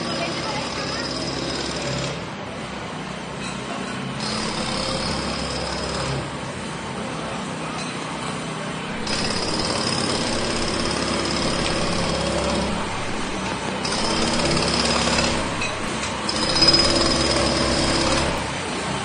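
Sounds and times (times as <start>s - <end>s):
pneumatic jackhammer hammering: 0.0s - 2.4s, 4.2s - 6.6s, 8.9s - 19.0s.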